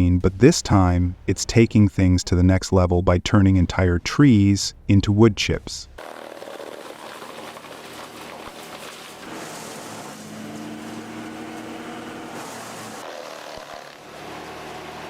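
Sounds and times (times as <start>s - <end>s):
wood chipper engine running: 6.0s - 15.0s.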